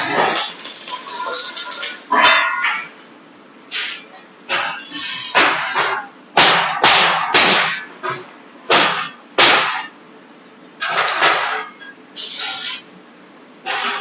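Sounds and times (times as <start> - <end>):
welding arc bursts: 0.0 - 2.0, 3.7 - 5.7, 12.2 - 12.9.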